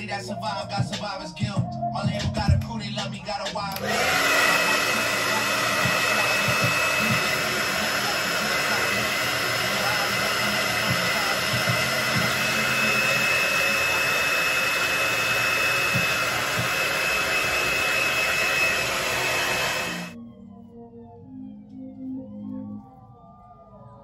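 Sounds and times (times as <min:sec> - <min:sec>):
hair dryer whining: 0:03.6 - 0:20.2.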